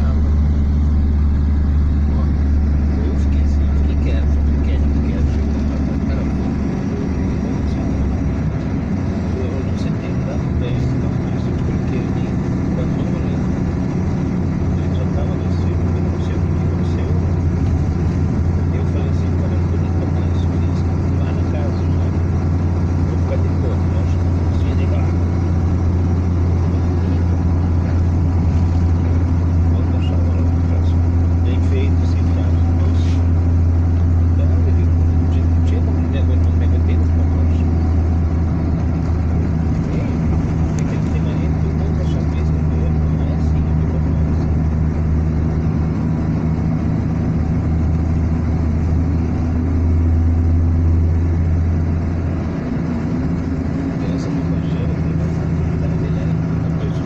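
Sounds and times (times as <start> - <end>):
car engine driving on highway: 0.0 - 57.0.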